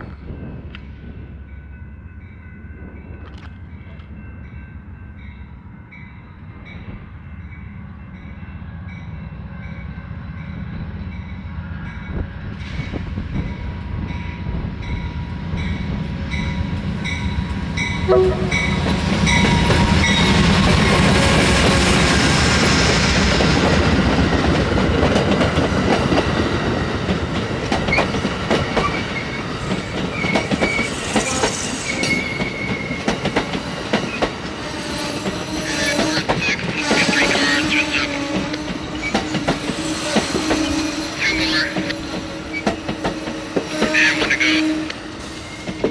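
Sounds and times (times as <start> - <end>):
train bell ringing: 0.0 - 34.4
diesel locomotive engines: 0.0 - 45.9
wheels clacking over rail joints: 16.9 - 45.9
wheels squealing: 27.8 - 33.3, 34.0 - 45.9.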